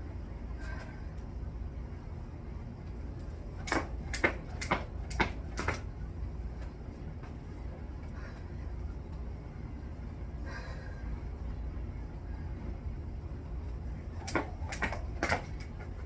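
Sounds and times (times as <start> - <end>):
steady low rumble: 0.0 - 16.0
jump rope slaps: 3.5 - 5.9, 14.0 - 16.0.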